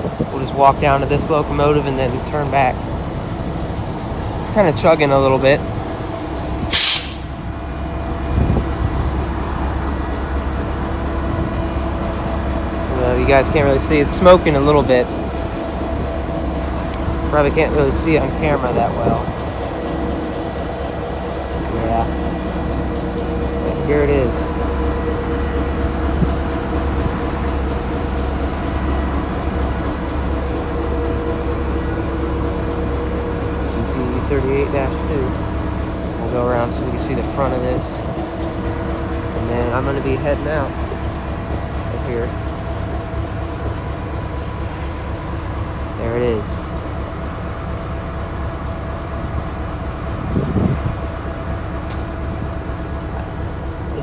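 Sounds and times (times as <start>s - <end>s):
diesel locomotive idling: 0.0s - 54.0s
brief loud sound: 6.7s - 7.4s.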